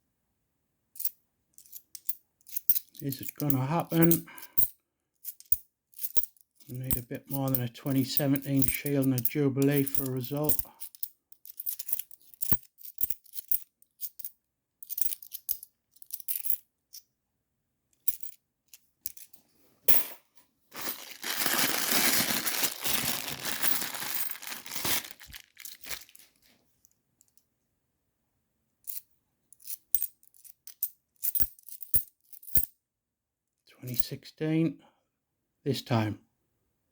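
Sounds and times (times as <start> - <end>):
coins clinking: 1.0 - 4.7, 5.3 - 14.2, 20.8 - 26.1, 29.6 - 32.7
rustling: 19.2 - 26.6.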